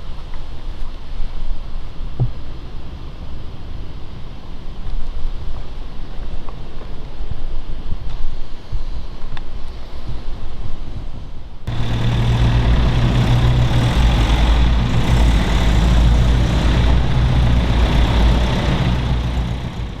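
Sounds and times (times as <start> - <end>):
car engine idling: 11.7 - 20.0
faint low rumble: 11.7 - 20.0.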